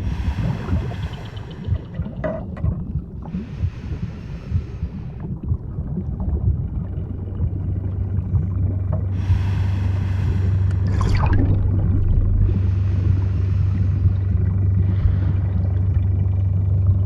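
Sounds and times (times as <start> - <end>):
steady low hum: 0.0 - 17.0
underwater rumble: 0.0 - 17.0
bubbling pops: 10.6 - 12.8.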